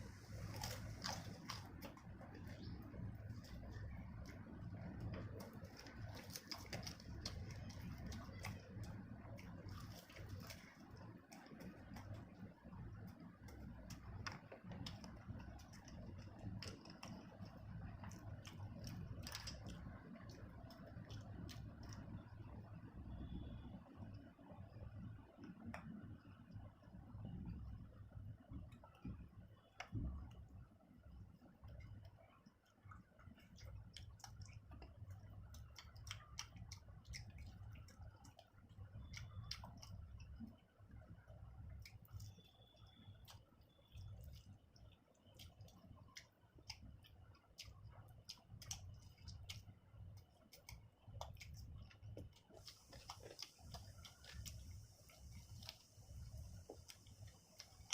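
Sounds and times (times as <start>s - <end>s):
person chewing: 0.0s - 10.5s, 33.4s - 38.4s, 41.8s - 57.9s
low steady hum: 0.0s - 57.9s.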